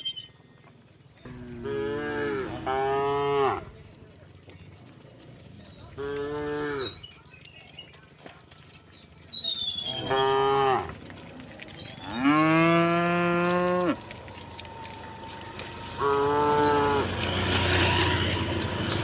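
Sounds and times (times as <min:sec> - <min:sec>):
cows mooing: 0:01.2 - 0:03.9, 0:05.8 - 0:07.0, 0:09.6 - 0:19.0.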